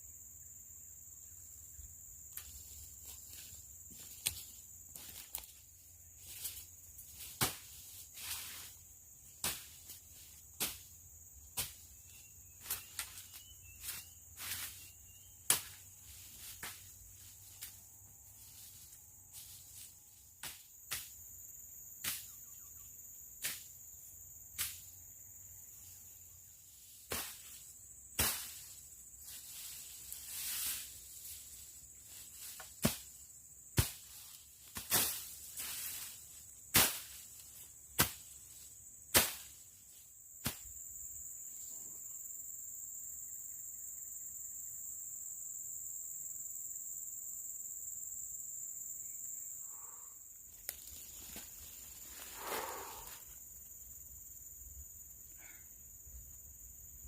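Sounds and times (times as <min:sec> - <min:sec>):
insects chirring: 0:00.0 - 0:57.0
blade chopping through brush: 0:36.7 - 0:37.2, 0:38.0 - 0:38.3.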